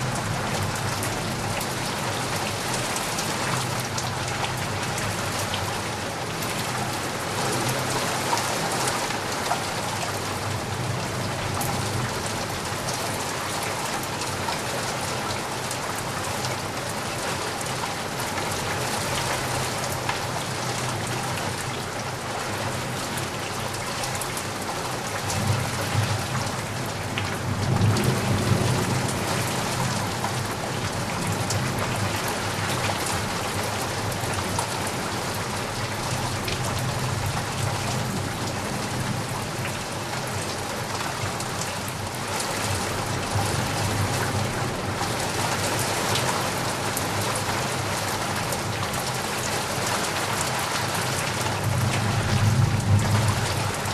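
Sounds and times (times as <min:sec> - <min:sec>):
rain drops on a surface: 0:00.0 - 0:53.9
low rumble of thunder: 0:25.4 - 0:33.0, 0:51.6 - 0:53.9.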